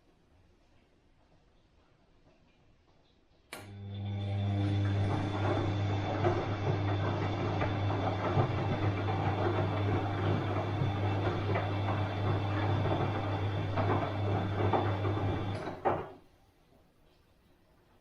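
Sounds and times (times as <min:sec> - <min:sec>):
washing machine motor hum: 0:03.5 - 0:16.3
washing machine drum churning: 0:03.7 - 0:16.2
washing machine click: 0:04.4 - 0:16.2.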